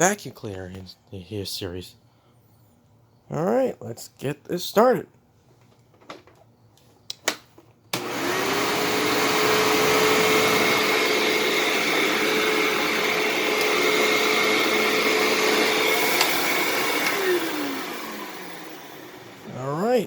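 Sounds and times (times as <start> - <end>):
vacuum cleaner motor running: 8.0 - 19.8.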